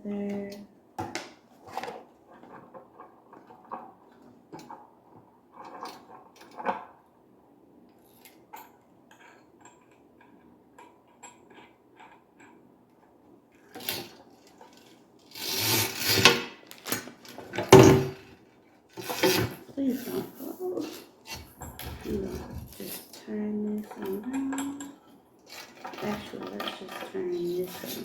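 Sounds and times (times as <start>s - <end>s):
parts rubbing and rattling: 13.6s - 28.0s.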